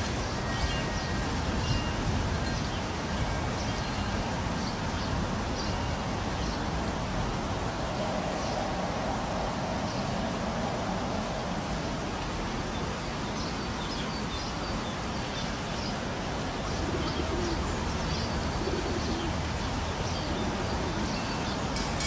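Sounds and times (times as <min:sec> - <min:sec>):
steady background hiss: 0:00.0 - 0:22.0
dove cooing: 0:16.7 - 0:19.5, 0:20.1 - 0:21.4.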